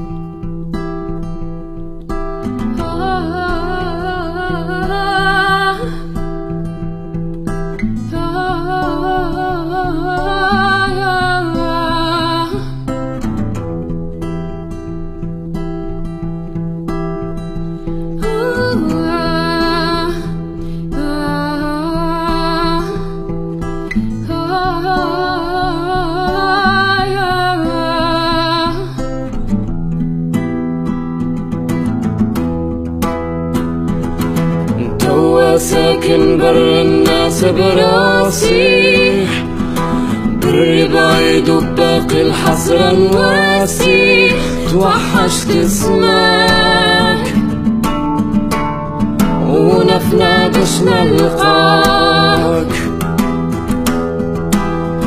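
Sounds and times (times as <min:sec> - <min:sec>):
acoustic guitar plucking: 0:00.0 - 0:55.0
held melody line with vibrato: 0:33.9 - 0:53.7.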